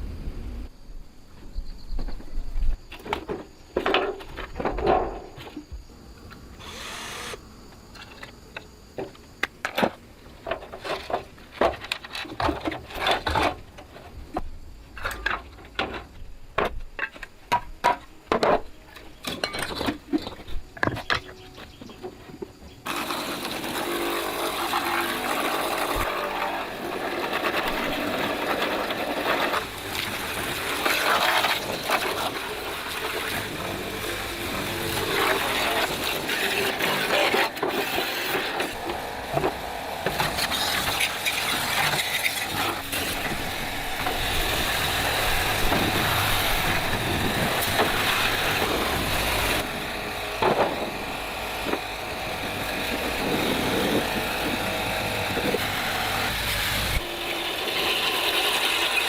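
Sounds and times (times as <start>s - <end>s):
rough mechanical noise: 6.6s - 8.3s, 22.4s - 59.0s.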